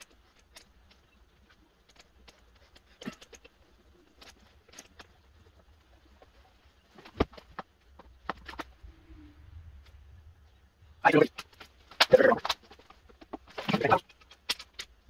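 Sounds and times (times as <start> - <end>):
clicks and knocks of parts handled: 0.0 - 8.7, 11.3 - 15.0
low rumble: 8.6 - 11.0.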